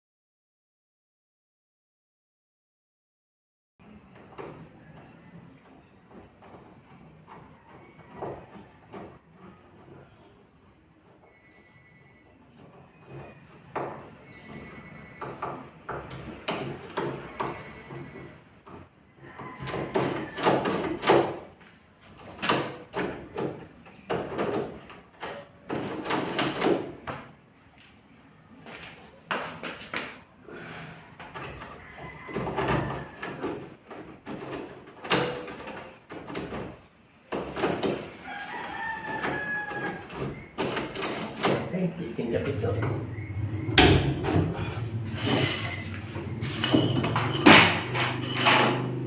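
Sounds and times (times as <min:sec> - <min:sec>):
rooster crowing: 0:19.2 - 0:20.6, 0:31.6 - 0:33.5, 0:38.1 - 0:40.4, 0:42.6 - 0:48.0
knocks and scraping on lock hardware: 0:44.9 - 0:49.0.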